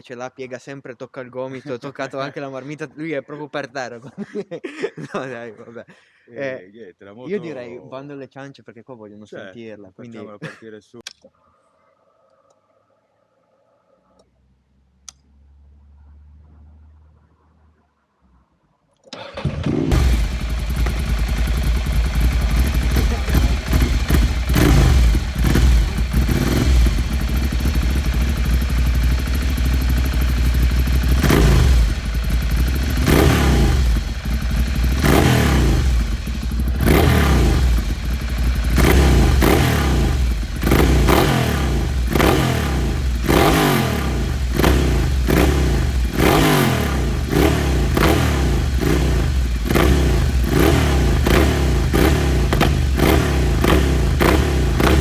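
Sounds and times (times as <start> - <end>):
motorcycle engine idling and revving: 19.3 - 55.0.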